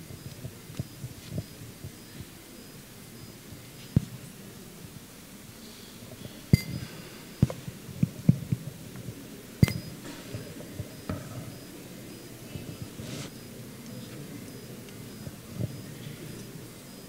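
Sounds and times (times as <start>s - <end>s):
faint high ringing tone: 6.5s - 7.6s, 9.6s - 17.0s.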